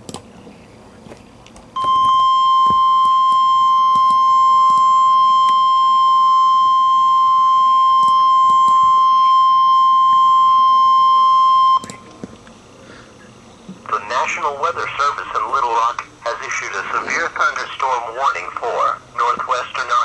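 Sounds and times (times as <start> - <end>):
steady high-pitched alarm tone: 1.8 - 12.0.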